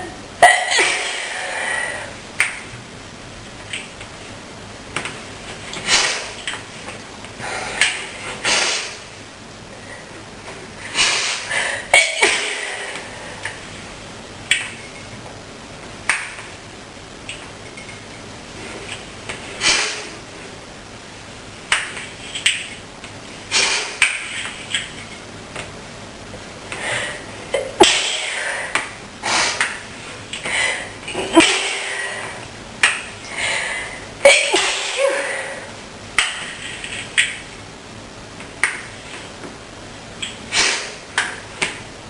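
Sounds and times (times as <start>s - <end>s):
woman sniffing: 10.9s - 11.8s, 40.5s - 41.0s
woman sneezing: 11.0s - 12.7s, 34.2s - 35.6s.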